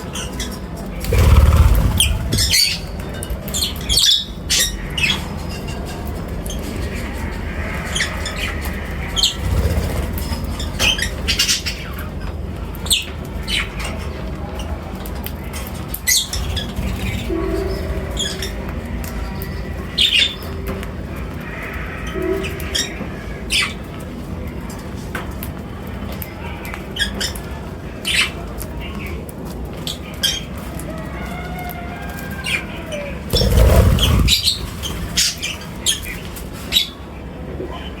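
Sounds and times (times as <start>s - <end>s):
small birds chirping: 1.0s - 3.0s, 33.3s - 36.1s
wing flutters: 1.1s - 2.9s, 33.4s - 35.8s
low rumble: 1.1s - 3.0s, 33.4s - 35.4s.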